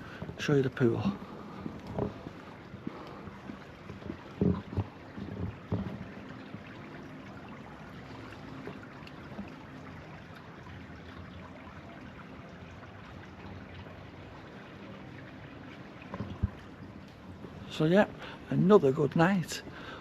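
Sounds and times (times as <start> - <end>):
water trickling: 0.0 - 20.0.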